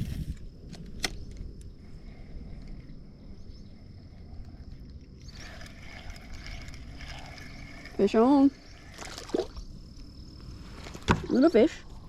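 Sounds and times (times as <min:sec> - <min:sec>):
high-pitched insect trill: 0:01.7 - 0:12.0
rustling and splashing: 0:05.3 - 0:09.6.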